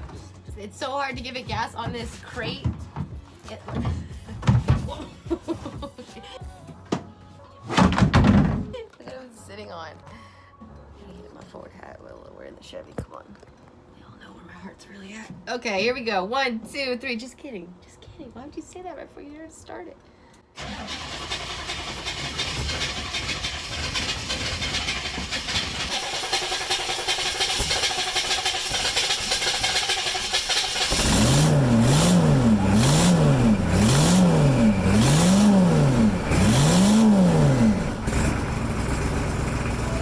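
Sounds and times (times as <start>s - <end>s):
diesel engine cranking on starter: 20.6s - 40.0s
diesel engine idling: 20.6s - 40.0s
diesel engine revving: 20.6s - 40.0s.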